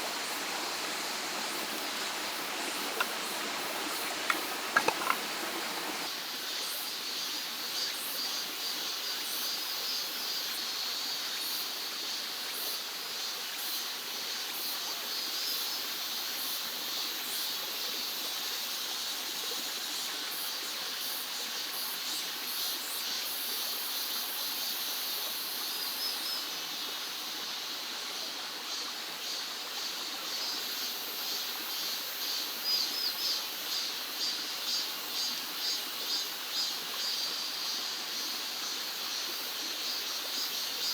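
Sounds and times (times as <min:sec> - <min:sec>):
stream flowing: 0:00.0 - 0:06.4.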